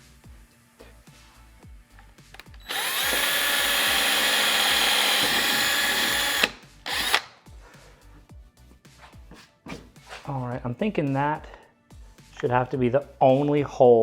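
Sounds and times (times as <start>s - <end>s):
power drill drilling: 2.6s - 7.3s.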